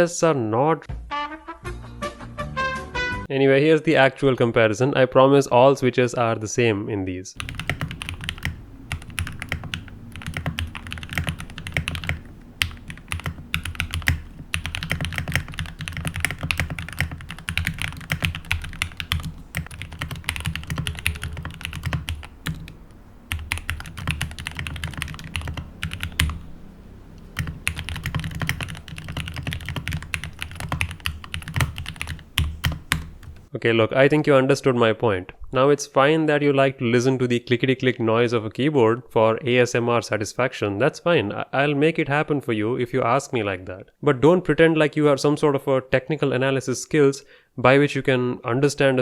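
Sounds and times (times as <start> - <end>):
mechanical keyboard typing: 7.4 - 26.5, 27.4 - 33.5.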